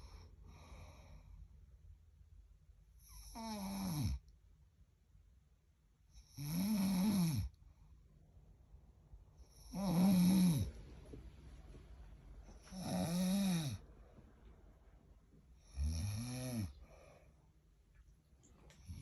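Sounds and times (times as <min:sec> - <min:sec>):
loud snoring: 0:03.1 - 0:04.2, 0:06.3 - 0:07.5, 0:09.6 - 0:10.7, 0:12.6 - 0:13.8, 0:15.6 - 0:16.8.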